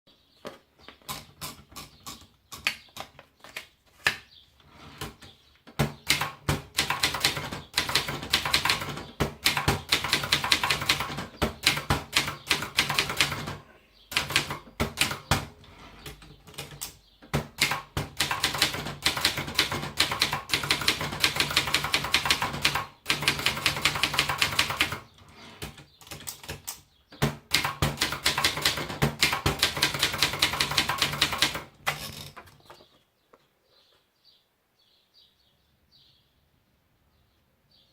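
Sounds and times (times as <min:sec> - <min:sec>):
typewriter keystrokes: 0:05.8 - 0:15.5, 0:16.1 - 0:25.0, 0:25.6 - 0:32.4.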